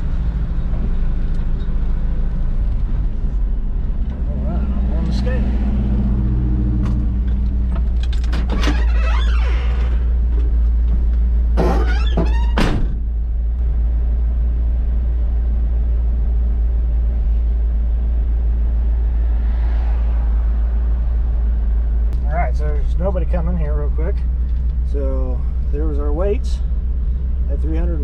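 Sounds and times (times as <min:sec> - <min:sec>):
truck engine idling: 0:20.9 - 0:28.0.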